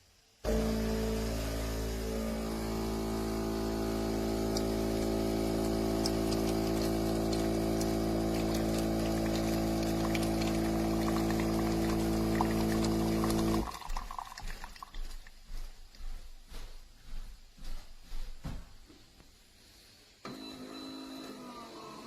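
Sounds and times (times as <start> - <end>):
espresso machine pump humming: 0.5 - 14.2.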